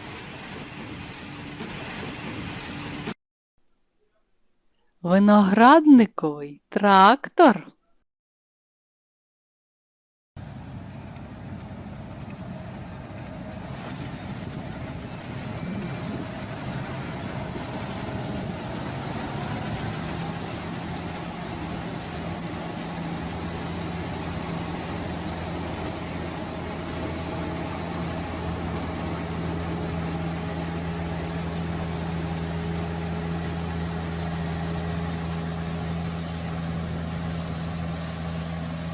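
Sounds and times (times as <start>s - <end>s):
steady low hum: 10.4s - 38.9s
tractor engine running: 10.4s - 38.9s.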